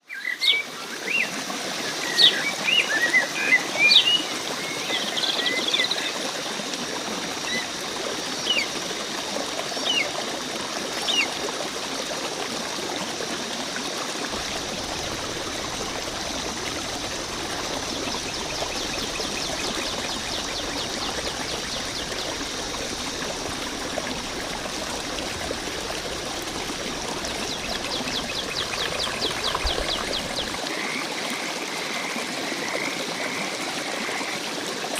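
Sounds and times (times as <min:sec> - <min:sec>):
water trickling: 0:01.3 - 0:34.9
birds chirping: 0:14.3 - 0:30.6.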